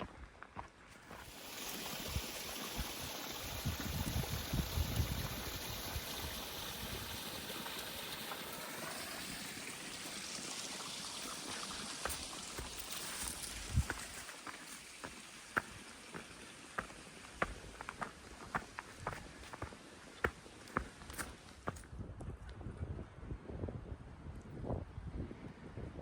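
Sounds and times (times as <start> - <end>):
creek water rushing: 1.0 - 21.8.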